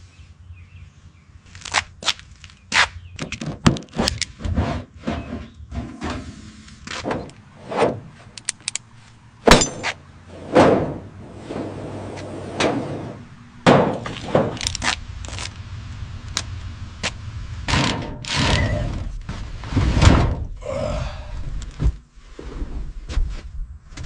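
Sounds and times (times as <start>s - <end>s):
scraping or rubbing: 4.0s - 8.4s.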